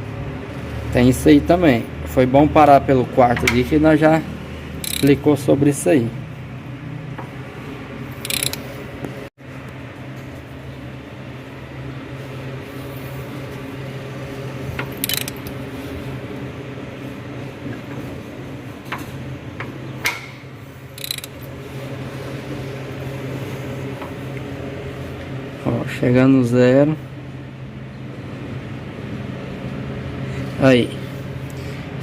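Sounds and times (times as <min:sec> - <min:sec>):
ratchet wrench clicking: 0:04.8 - 0:05.2, 0:08.2 - 0:08.7, 0:14.8 - 0:15.6, 0:21.0 - 0:21.5.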